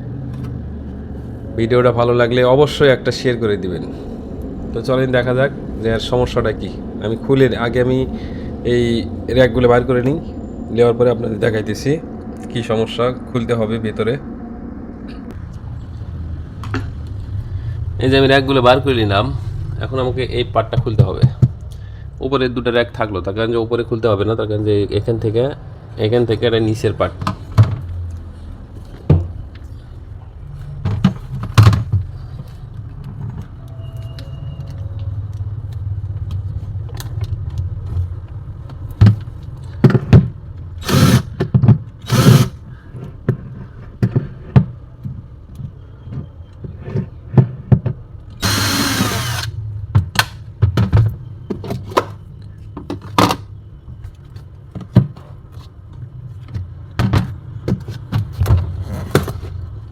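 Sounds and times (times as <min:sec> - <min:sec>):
steady low hum: 0:00.0 - 0:22.2
power screwdriver whirring: 0:40.8 - 0:41.4, 0:42.0 - 0:42.6, 0:48.4 - 0:49.6.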